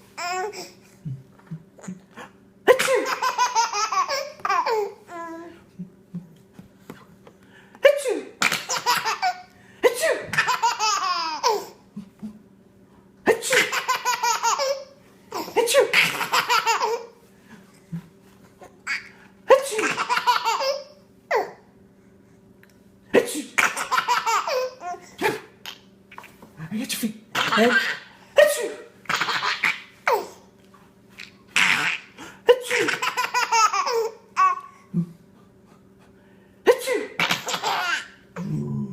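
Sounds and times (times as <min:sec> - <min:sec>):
person sneezing: 0:02.7 - 0:03.2, 0:09.8 - 0:10.4, 0:13.3 - 0:13.7, 0:25.2 - 0:25.5, 0:28.4 - 0:28.9, 0:36.7 - 0:37.5
baby giggling: 0:02.8 - 0:05.5, 0:08.4 - 0:11.8, 0:13.4 - 0:17.1, 0:18.8 - 0:21.5, 0:23.6 - 0:25.8, 0:29.1 - 0:30.4, 0:31.6 - 0:34.7, 0:37.2 - 0:38.5
laughing pulses: 0:38.4 - 0:38.9.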